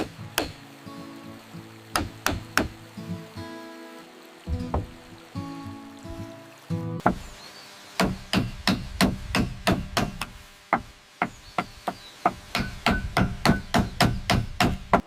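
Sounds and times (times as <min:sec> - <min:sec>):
hand tool striking: 0:08.0 - 0:15.0.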